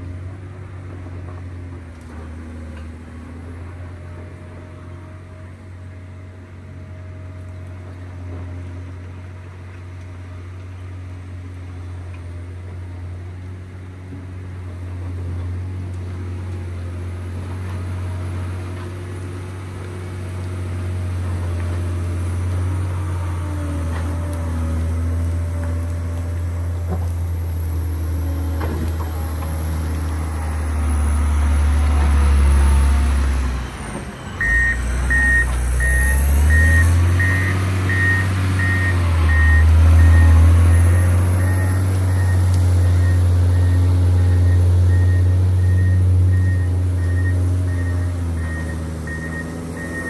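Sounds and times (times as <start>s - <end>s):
diesel engine running under load: 0.0s - 50.0s
reversing alarm beeping: 34.2s - 50.0s.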